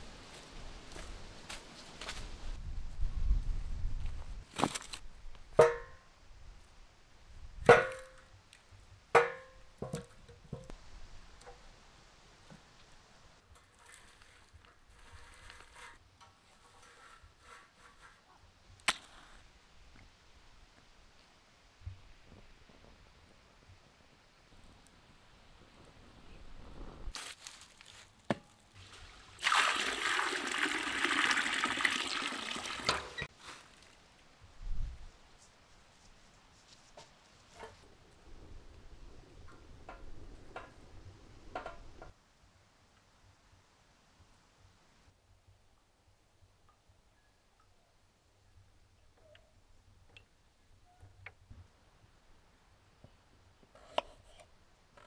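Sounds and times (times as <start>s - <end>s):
water trickling: 28.8s - 33.3s.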